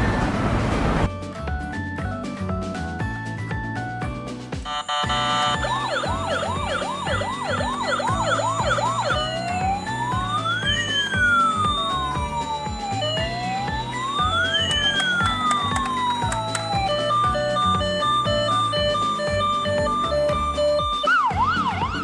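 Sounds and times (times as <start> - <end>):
background music with steady beat: 1.1 - 22.0
emergency vehicle siren: 4.7 - 22.0.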